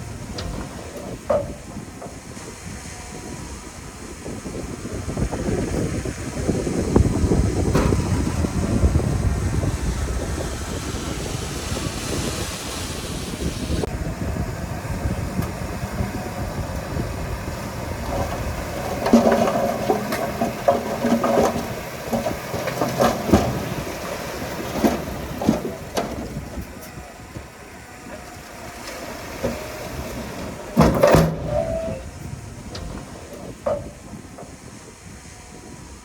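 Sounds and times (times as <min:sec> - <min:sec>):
metallic knocks and clanks: 0:00.0 - 0:02.5, 0:17.7 - 0:27.5, 0:28.1 - 0:34.7
diesel engine running: 0:00.0 - 0:36.0.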